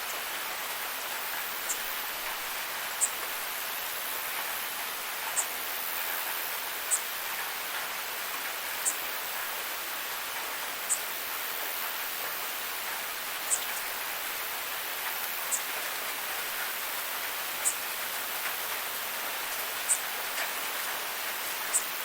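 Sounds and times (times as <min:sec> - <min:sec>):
bird calling: 0:21.7 - 0:21.9.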